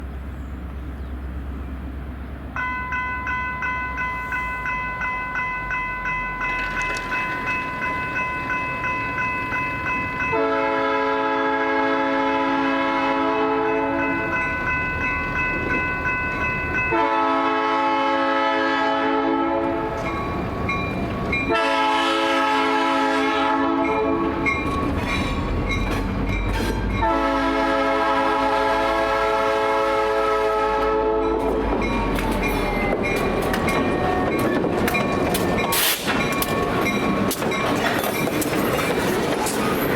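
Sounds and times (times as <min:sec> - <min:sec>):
crossing warning bell ringing: 0:02.5 - 0:39.9
locomotive air horn blasts: 0:10.3 - 0:14.1, 0:16.9 - 0:19.9, 0:21.5 - 0:24.4, 0:27.0 - 0:31.7.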